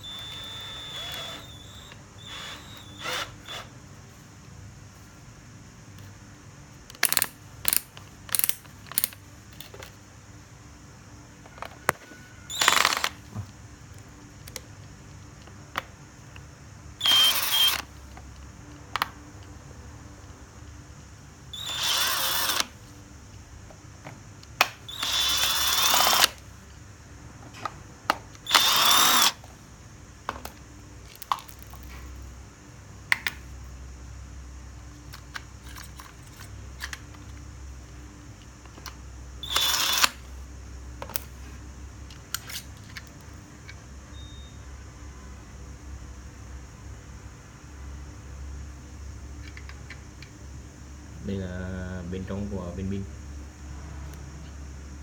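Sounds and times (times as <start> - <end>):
drill motor whirring: 0.0 - 3.8, 12.5 - 13.4, 17.0 - 17.9, 21.5 - 22.8, 24.9 - 26.4, 28.4 - 29.4, 39.4 - 40.3.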